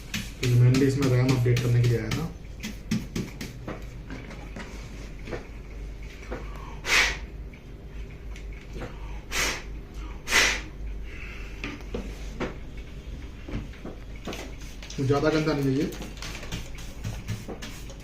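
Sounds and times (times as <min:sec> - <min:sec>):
puffs of air blown: 0:06.5 - 0:07.3, 0:09.0 - 0:11.5.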